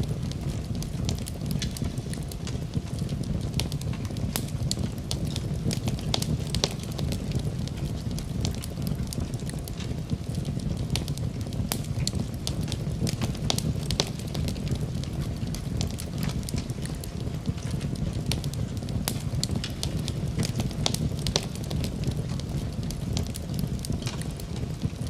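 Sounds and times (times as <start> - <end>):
fire crackling and popping: 0.0 - 25.0
low rumble of flames: 0.0 - 25.0.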